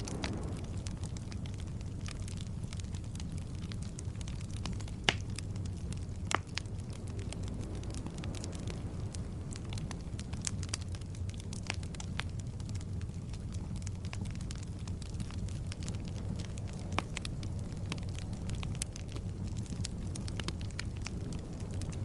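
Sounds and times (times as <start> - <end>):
fire crackles and pops: 0.0 - 22.0
fire flames rumbling: 0.0 - 22.0.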